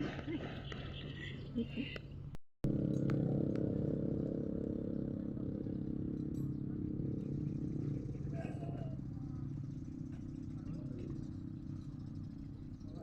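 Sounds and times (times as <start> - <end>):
small engine running: 2.6 - 13.0.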